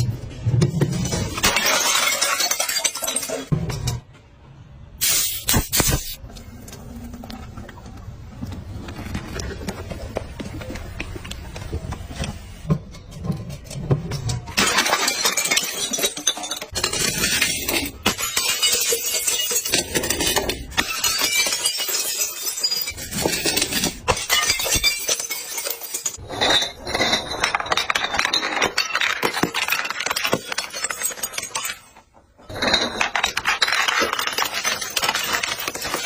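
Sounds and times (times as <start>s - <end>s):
glass bottles clinking and breaking: 0.6s - 4.1s, 12.7s - 36.0s.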